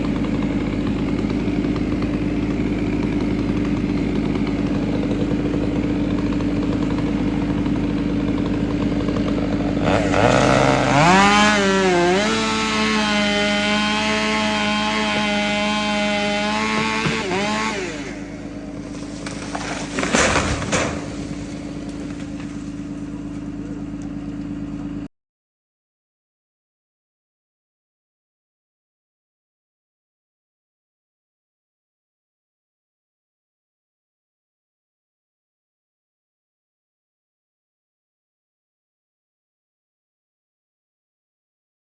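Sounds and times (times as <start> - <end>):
engine idling: 0.0 - 13.0, 16.5 - 25.1
chainsaw whining at full speed: 0.0 - 25.1.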